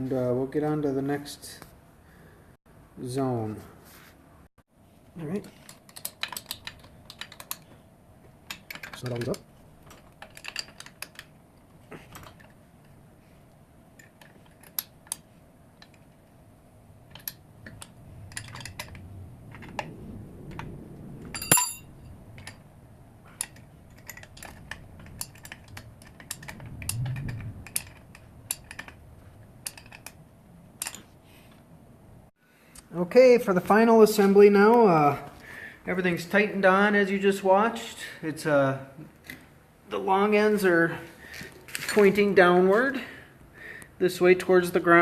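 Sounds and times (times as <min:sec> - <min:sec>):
metallic clicks of hand tools: 0:05.5 - 0:07.7, 0:08.5 - 0:11.3, 0:14.0 - 0:16.0, 0:17.1 - 0:19.8, 0:23.3 - 0:29.0, 0:29.6 - 0:30.2
ringing metal clink: 0:21.4 - 0:22.0.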